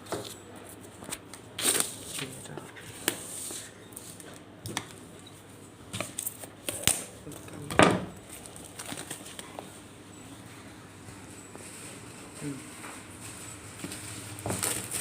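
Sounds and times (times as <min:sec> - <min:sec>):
packaging rustling: 0:08.2 - 0:09.7, 0:13.1 - 0:15.0.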